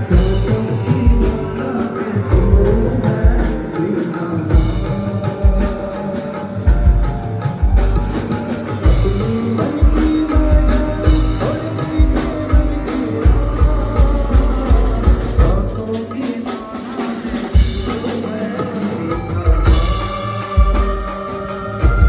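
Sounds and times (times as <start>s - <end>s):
deep bass hits: 0.0s - 3.8s
drum kit: 0.0s - 22.0s.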